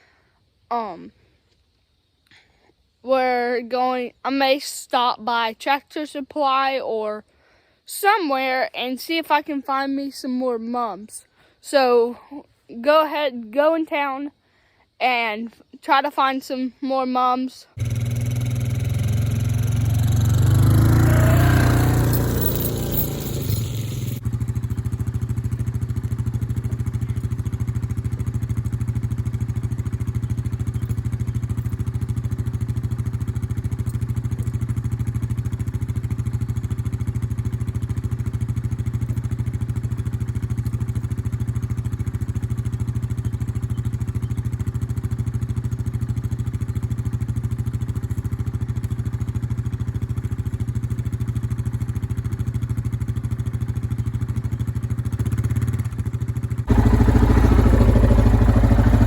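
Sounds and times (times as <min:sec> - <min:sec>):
small engine running: 0:17.8 - 0:52.7, 0:55.7 - 0:59.0.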